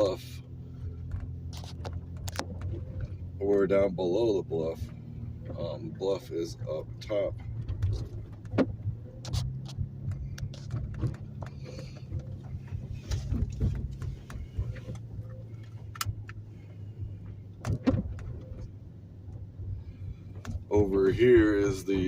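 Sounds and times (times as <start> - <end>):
car engine and road hum: 0.0 - 22.0
light clicks and knocks: 7.3 - 19.5.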